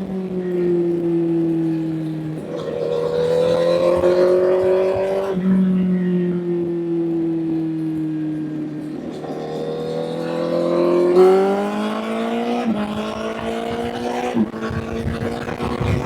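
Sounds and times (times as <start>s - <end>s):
motorcycle engine shifting gears: 0.0s - 16.0s.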